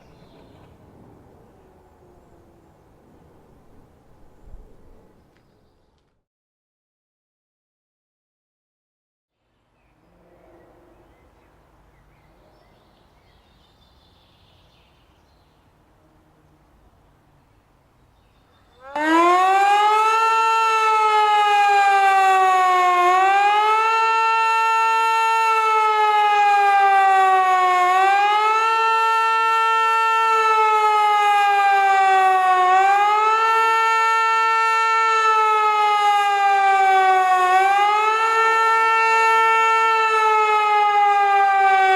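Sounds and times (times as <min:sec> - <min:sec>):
birds chirping: 0:00.0 - 0:00.8, 0:09.4 - 0:19.0
wailing civil defence siren: 0:01.3 - 0:03.1, 0:18.7 - 0:41.9.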